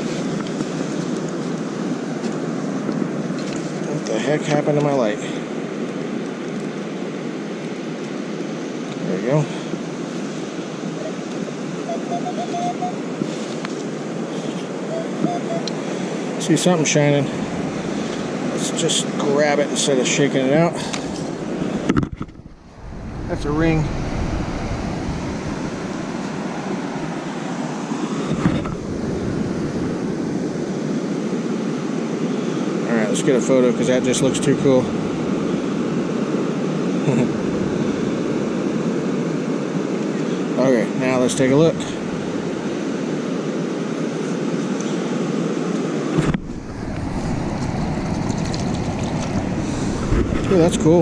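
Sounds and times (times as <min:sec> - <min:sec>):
ocean surf: 0:00.0 - 0:51.0
wind: 0:00.0 - 0:51.0
wind on microphone: 0:20.9 - 0:27.2, 0:28.2 - 0:31.3, 0:46.0 - 0:51.0.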